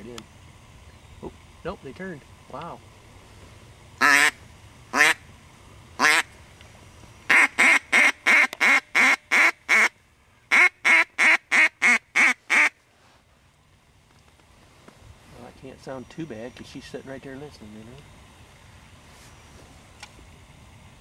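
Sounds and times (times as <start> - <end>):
duck call quacks: 4.0 - 5.2, 6.0 - 6.3, 7.3 - 9.9, 10.5 - 12.8.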